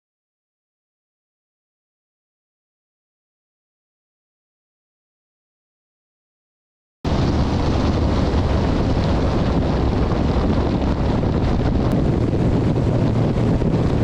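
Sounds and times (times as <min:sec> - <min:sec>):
motorboat engine drone: 0:07.1 - 0:14.0
rushing water: 0:07.1 - 0:14.0
wind buffeting microphone: 0:07.1 - 0:14.0.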